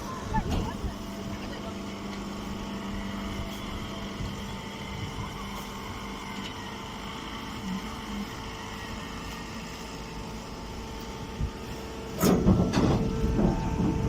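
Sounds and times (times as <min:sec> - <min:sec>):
machinery humming: 0:00.0 - 0:14.0
loud mechanical clattering: 0:12.1 - 0:14.0.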